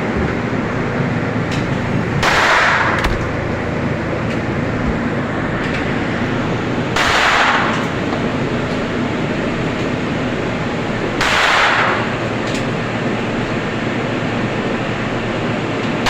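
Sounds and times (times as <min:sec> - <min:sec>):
steady loud rumble: 0:00.0 - 0:14.5
gunshots: 0:02.2 - 0:03.6.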